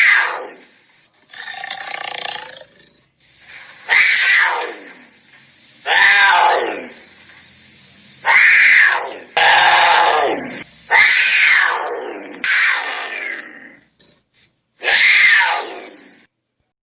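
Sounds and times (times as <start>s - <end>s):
tiger snarling: 1.2s - 5.0s, 5.8s - 7.0s, 8.2s - 13.8s.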